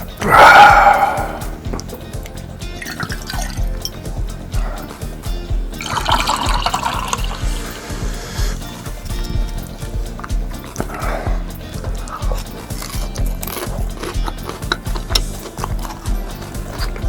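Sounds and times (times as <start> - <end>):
background music with steady beat: 0.0 - 17.0
liquid splashing: 5.8 - 7.5.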